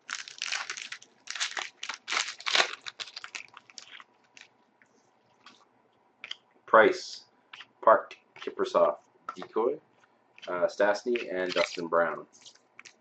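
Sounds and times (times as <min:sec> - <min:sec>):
wrapper tearing and crinkling: 0:00.0 - 0:04.5, 0:11.2 - 0:13.0.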